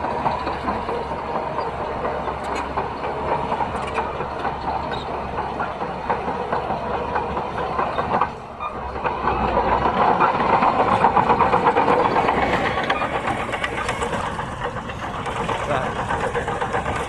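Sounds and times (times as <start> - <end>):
bulldozer engine running: 0.0 - 17.0
steel tracks clanking: 0.0 - 17.0.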